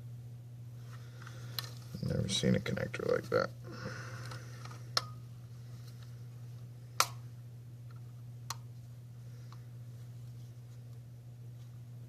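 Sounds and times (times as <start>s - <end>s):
low steady hum: 0.0s - 12.0s
plastic clips snapping: 7.0s - 7.2s.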